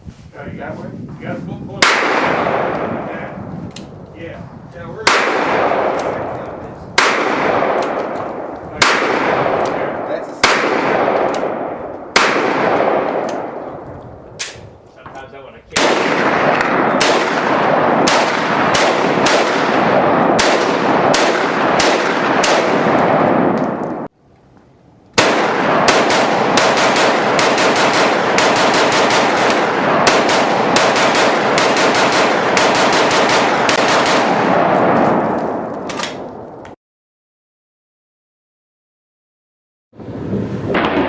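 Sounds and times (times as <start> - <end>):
rapid continuous gunfire: 1.8 - 3.3, 5.0 - 13.6, 15.7 - 23.6, 25.2 - 35.7.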